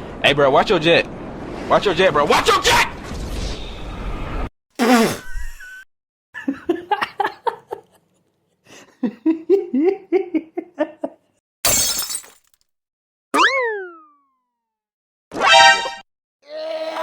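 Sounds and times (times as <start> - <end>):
glass breaking: 11.6 - 12.6
springy cartoon boing: 13.4 - 14.4.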